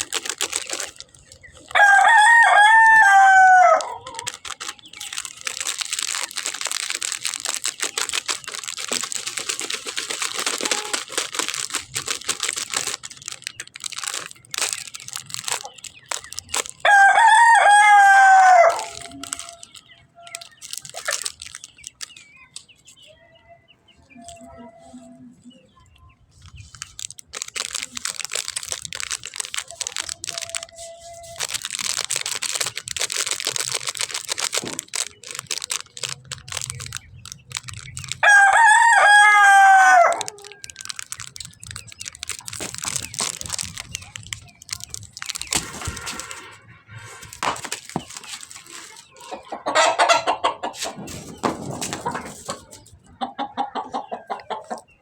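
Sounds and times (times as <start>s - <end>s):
rustling crackling noise: 0.0s - 53.2s
rooster crowing: 1.7s - 4.0s, 16.8s - 19.0s, 38.2s - 40.4s.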